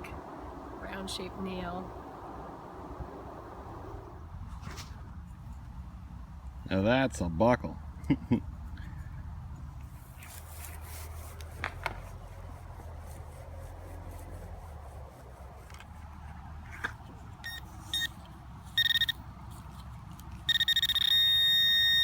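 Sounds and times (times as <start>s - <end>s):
low handling rumble: 0.0s - 5.8s
metal detector beeps: 17.4s - 19.2s, 20.5s - 22.0s.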